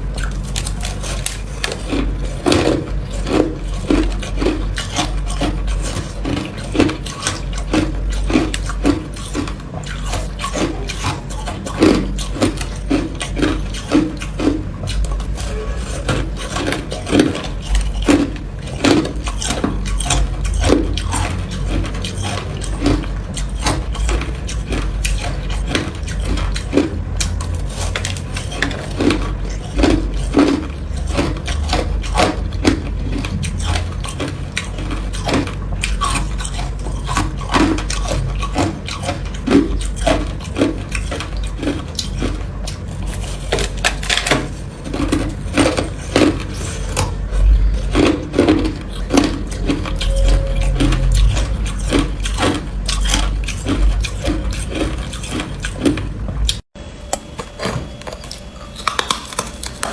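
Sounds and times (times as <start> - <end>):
person crunching ice: 0.0 - 56.6, 57.2 - 59.9
low rumble: 25.8 - 36.0, 46.9 - 55.1.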